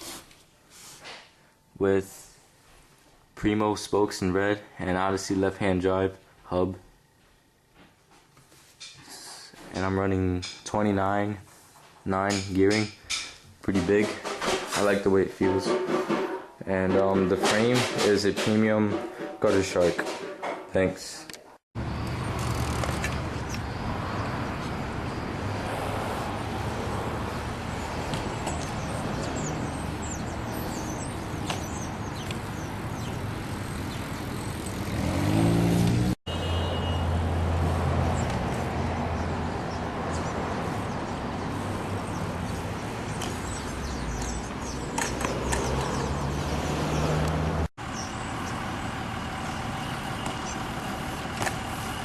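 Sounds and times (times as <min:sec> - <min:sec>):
road noise: 0:21.8 - 0:52.0
vehicle engine running: 0:40.6 - 0:52.0.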